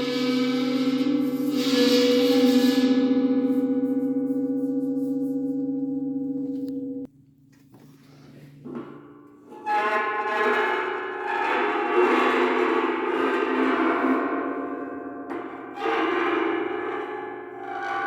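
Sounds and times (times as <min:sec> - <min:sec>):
mallet rubbed on metal percussion: 0:00.0 - 0:07.1.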